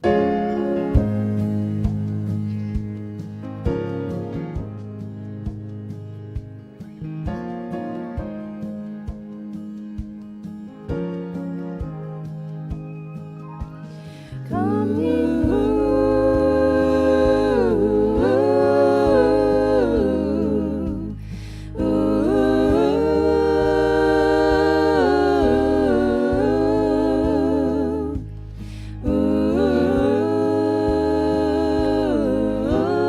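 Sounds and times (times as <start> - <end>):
low bass notes: 0.0 - 33.0
vocal quartet humming in harmony: 13.8 - 33.0.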